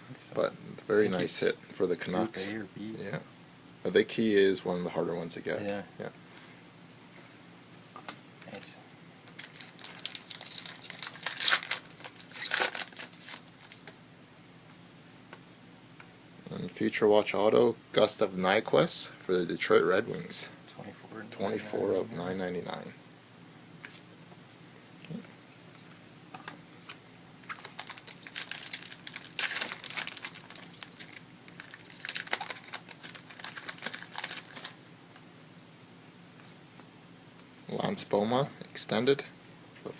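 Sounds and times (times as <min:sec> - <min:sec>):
wrapper crinkling and tearing: 0:09.3 - 0:13.9, 0:27.4 - 0:35.2.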